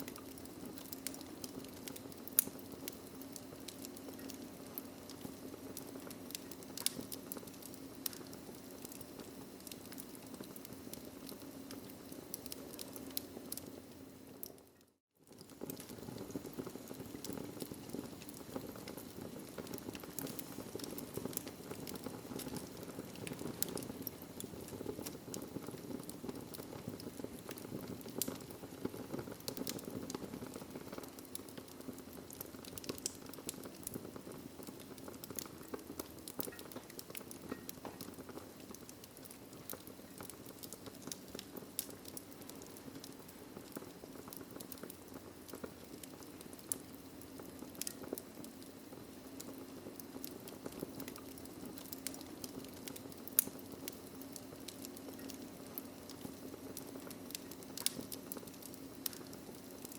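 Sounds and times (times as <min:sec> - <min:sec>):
fire crackling and popping: 0:00.0 - 0:59.9
low rush of flames: 0:15.4 - 0:59.9.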